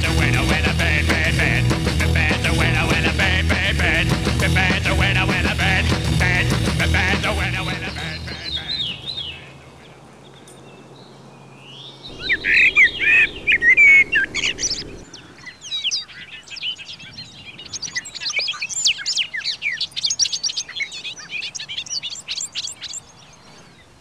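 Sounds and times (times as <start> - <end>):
birds chirping: 6.3 - 24.0.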